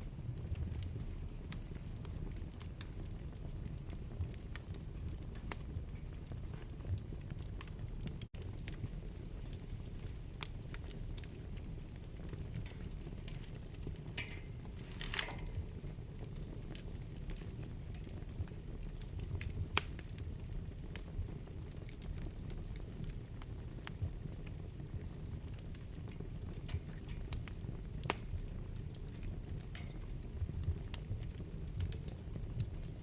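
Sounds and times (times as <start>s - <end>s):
fire crackling and popping: 0.0s - 33.0s
low rumble of flames: 0.0s - 33.0s.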